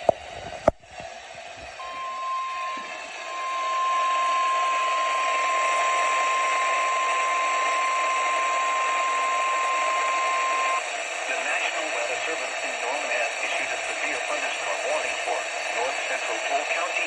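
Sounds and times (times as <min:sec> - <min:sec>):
radio alarm tone: 0:01.8 - 0:10.8
radio static hiss: 0:01.8 - 0:17.0.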